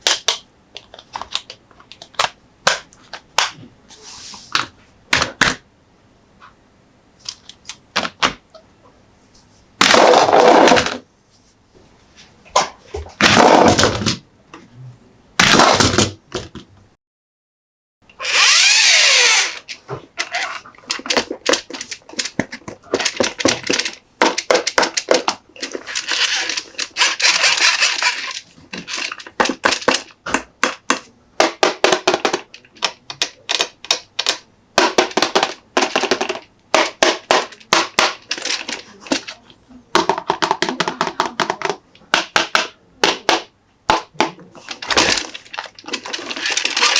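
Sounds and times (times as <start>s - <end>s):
plastic packaging rustling: 19.6s - 30.1s, 37.5s - 39.4s, 44.6s - 46.9s.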